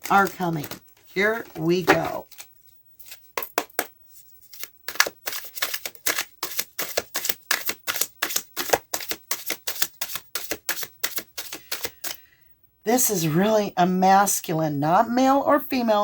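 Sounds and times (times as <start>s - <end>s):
cards being shuffled: 0.0s - 12.2s.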